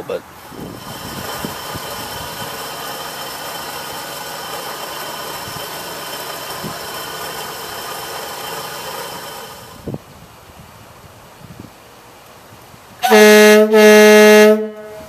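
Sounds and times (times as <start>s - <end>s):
rotating beacon motor whirring: 0.5s - 9.8s.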